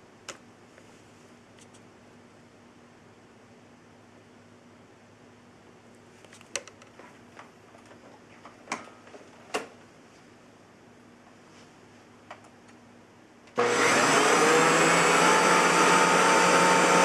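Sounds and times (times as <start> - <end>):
faint steady hum: 0.0 - 13.6.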